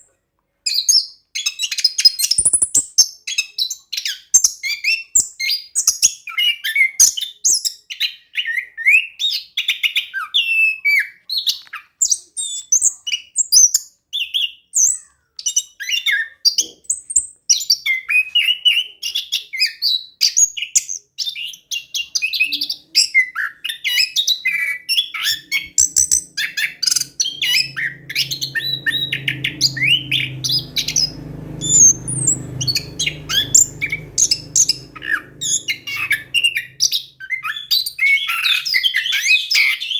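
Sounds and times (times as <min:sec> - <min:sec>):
bird singing chirps and whistles: 0:21.3 - 0:39.9
low steady hum: 0:25.3 - 0:37.1.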